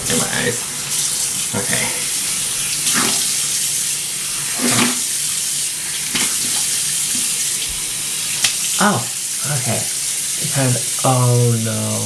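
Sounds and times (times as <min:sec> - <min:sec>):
water running from sink tap: 0:00.0 - 0:12.0.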